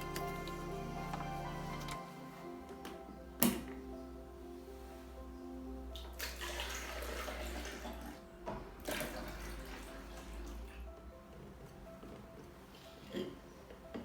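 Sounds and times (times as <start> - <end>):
soft background music: 0.0 - 14.0
water running: 6.0 - 10.9.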